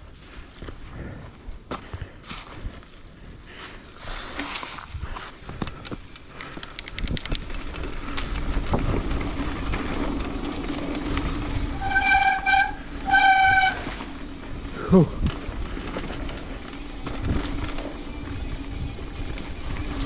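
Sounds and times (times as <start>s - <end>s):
bicycle freehub ticking: 4.9s - 20.0s
high-pitched squeal: 11.2s - 15.0s.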